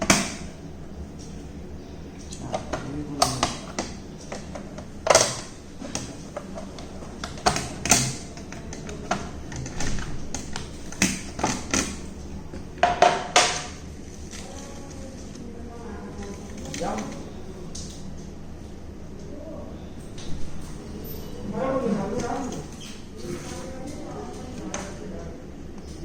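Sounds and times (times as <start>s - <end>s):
low steady hum: 0.0s - 26.0s
hands clicking and knocking on casing: 2.5s - 13.6s.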